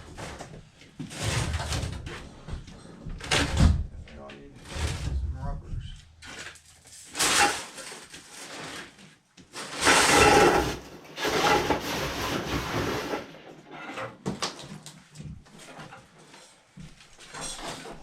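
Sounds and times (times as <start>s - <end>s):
furnace cabinet scraping: 0.0s - 3.9s, 4.5s - 14.2s, 17.2s - 18.0s.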